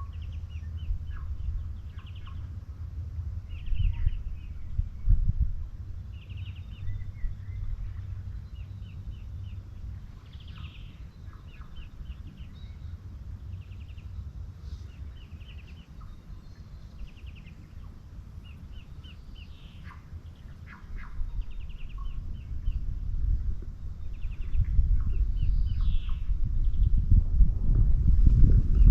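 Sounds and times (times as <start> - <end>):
small birds chirping: 0.0 - 27.2
steady low rumble: 0.0 - 28.9.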